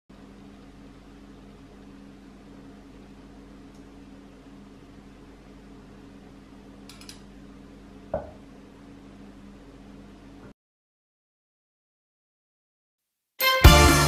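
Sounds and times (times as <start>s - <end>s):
steady low hum: 0.1s - 10.5s.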